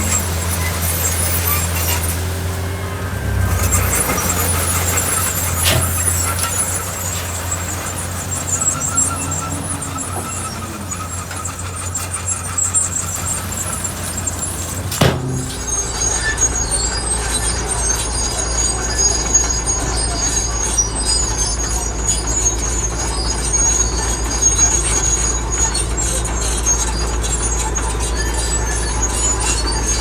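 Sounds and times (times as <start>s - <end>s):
metallic squealing: 0.0s - 17.0s
diesel engine running: 0.0s - 25.4s
sharp metal clanks: 3.6s - 16.1s.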